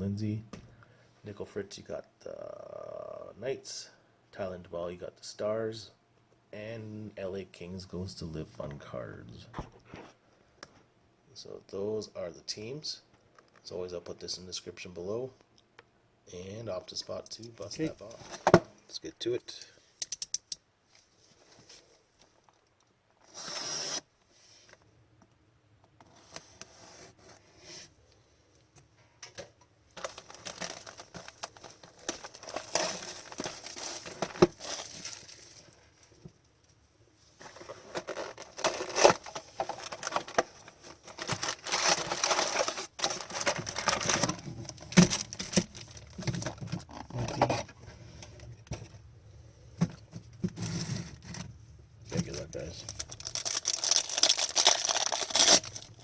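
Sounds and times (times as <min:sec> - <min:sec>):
card wrappers tearing and crinkling: 0:30.0 - 0:35.8, 0:37.4 - 0:47.6, 0:52.1 - 0:56.0.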